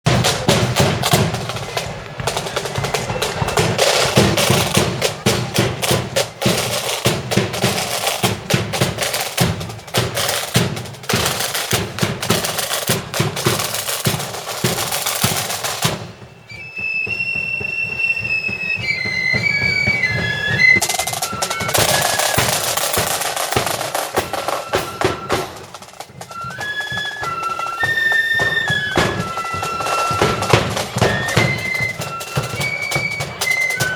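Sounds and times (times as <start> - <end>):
snare and bass drums: 0.0 - 33.9
high melody of short notes: 13.6 - 33.9.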